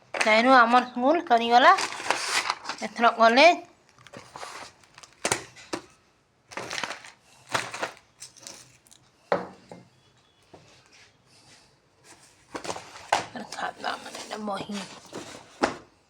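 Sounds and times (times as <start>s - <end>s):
papers rustling and crinkling: 0.0s - 0.8s, 1.5s - 3.0s, 3.8s - 9.0s, 12.0s - 16.0s.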